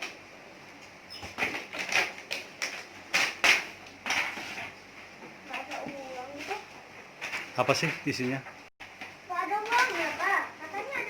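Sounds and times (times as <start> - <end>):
plastic packaging rustling: 1.4 - 8.3, 9.4 - 11.0.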